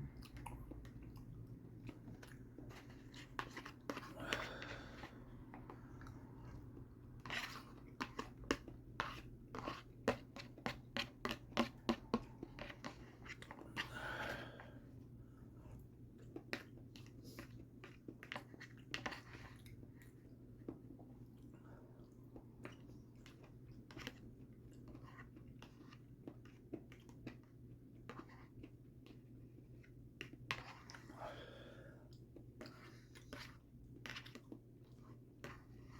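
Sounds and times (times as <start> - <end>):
chewing with wet mouth clicks: 0.1 - 2.7.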